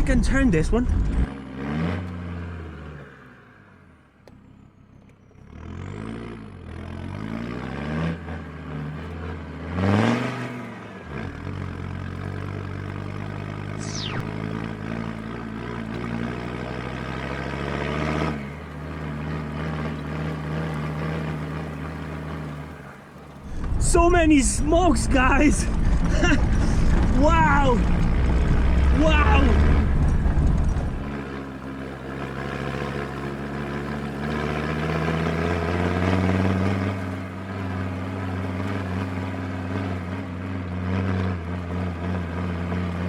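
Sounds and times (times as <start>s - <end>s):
diesel engine revving: 0.0s - 43.0s
high squeal falling in pitch: 13.8s - 14.5s.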